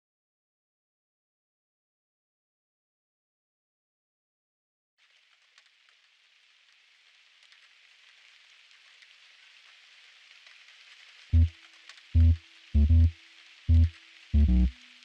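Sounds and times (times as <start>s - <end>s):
faint crackling hiss with clicks: 5.0s - 15.0s.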